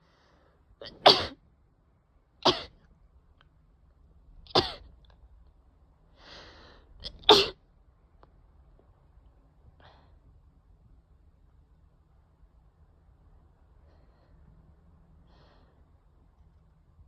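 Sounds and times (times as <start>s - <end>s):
person sneezing: 0.8s - 1.4s, 2.5s - 2.7s, 4.6s - 4.8s, 7.0s - 7.6s.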